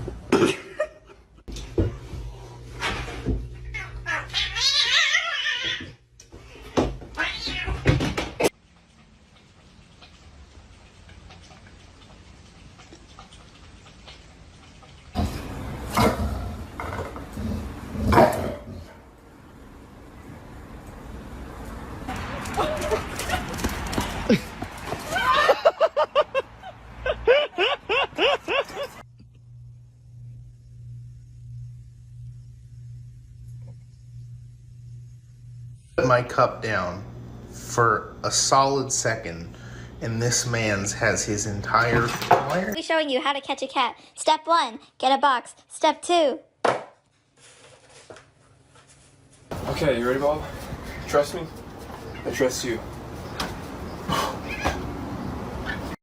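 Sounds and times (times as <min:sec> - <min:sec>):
cat yowling: 0:03.6 - 0:06.0
animal yelping: 0:03.8 - 0:05.9
low steady hum: 0:27.0 - 0:42.7.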